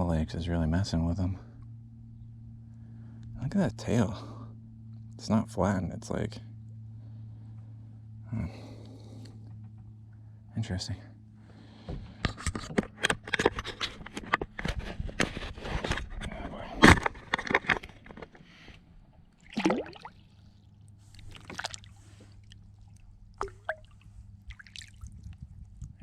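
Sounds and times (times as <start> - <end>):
knocks and scrapes on kayak hull: 11.8 - 18.3
water sloshing and splashing: 19.2 - 25.8.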